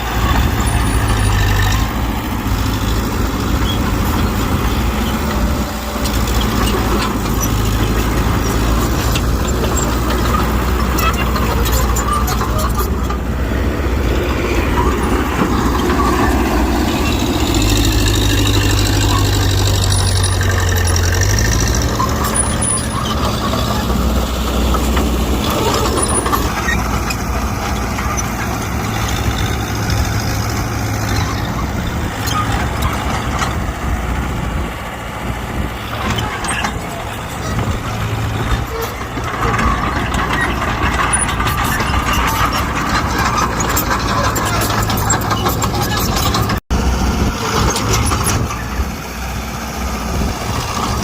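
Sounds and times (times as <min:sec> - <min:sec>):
diesel earthmoving machine engine: 0:00.0 - 0:51.0
high metallic squeal: 0:00.1 - 0:33.6.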